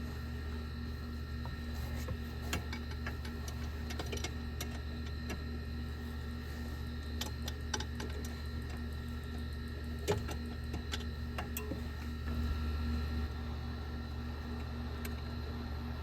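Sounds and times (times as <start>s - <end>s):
steady low hum: 0.0s - 16.0s
parts clicking and tapping: 1.5s - 5.4s, 7.1s - 12.4s.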